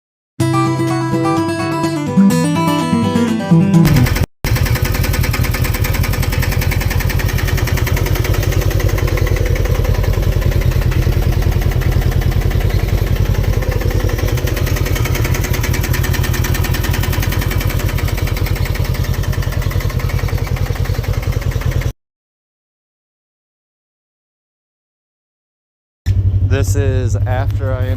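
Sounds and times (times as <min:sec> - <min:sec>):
guitar music: 0:00.4 - 0:04.3
engine idling with rattle: 0:03.9 - 0:21.9, 0:26.1 - 0:27.9.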